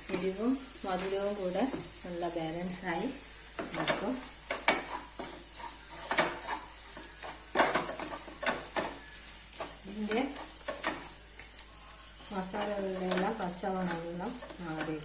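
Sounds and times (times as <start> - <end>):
oil sizzling: 0.0 - 15.0
spoon scraping a pan: 3.4 - 15.0
spoon knocking against pan: 3.6 - 9.0.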